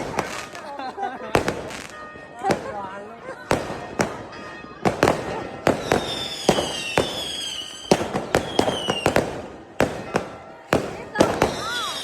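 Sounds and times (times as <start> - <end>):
firework bangs with rumbling echo: 1.3 - 12.0
whistling fireworks: 3.5 - 12.0.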